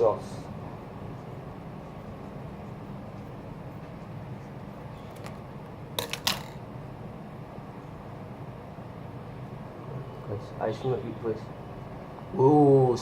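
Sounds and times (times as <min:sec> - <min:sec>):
low fan hum: 0:00.0 - 0:13.0.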